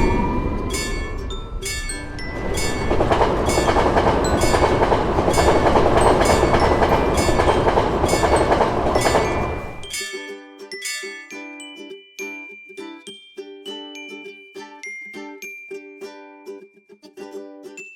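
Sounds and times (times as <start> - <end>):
train passing: 0.0 - 10.0
crossing warning bell ringing: 0.0 - 11.2.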